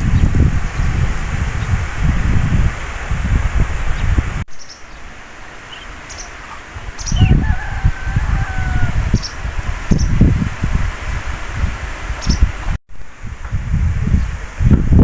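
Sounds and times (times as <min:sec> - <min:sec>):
small birds chirping: 0:00.0 - 0:02.0, 0:03.8 - 0:10.2, 0:12.2 - 0:12.6
wind buffeting microphone: 0:00.0 - 0:15.0
rooster crowing: 0:07.0 - 0:09.4.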